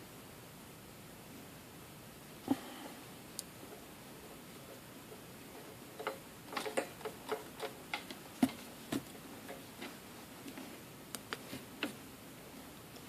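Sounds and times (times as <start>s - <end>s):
small clicks and taps: 5.1s - 12.0s.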